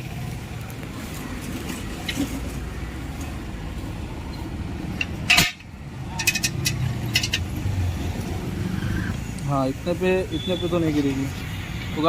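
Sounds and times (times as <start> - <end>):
metal tools clinking: 5.0 - 7.5.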